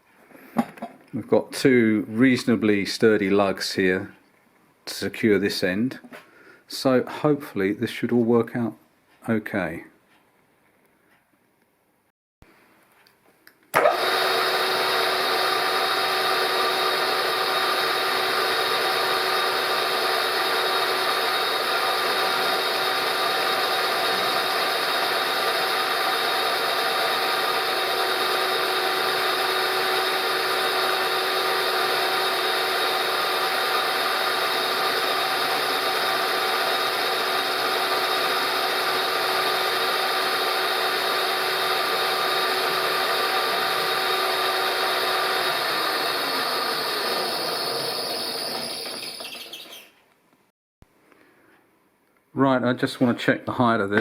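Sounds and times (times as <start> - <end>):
milling machine humming and whining: 13.8 - 49.9.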